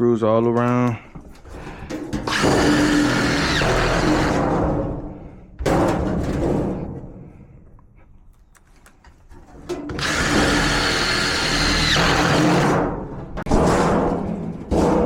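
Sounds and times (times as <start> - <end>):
power drill driving screws: 2.2 - 4.4, 9.9 - 12.8.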